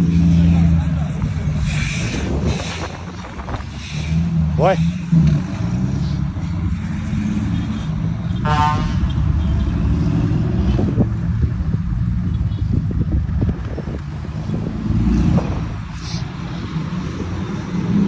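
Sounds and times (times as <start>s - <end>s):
truck diesel engines rumbling: 0.0s - 18.0s
truck air horn: 8.4s - 9.4s.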